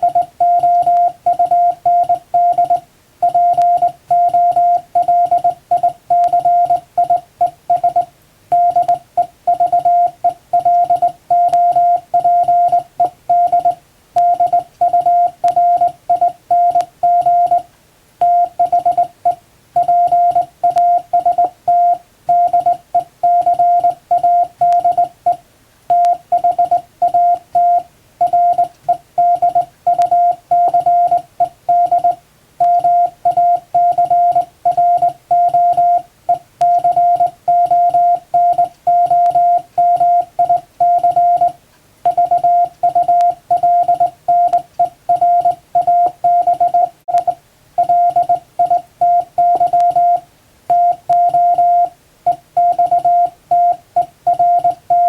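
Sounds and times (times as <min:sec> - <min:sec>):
morse code beeps: 0:00.0 - 0:55.0.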